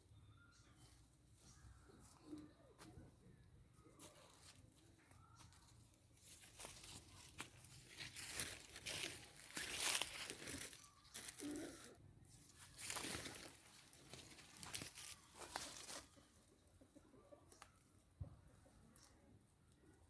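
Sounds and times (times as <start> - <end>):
dry material crunching: 6.2 - 11.9, 12.5 - 16.2.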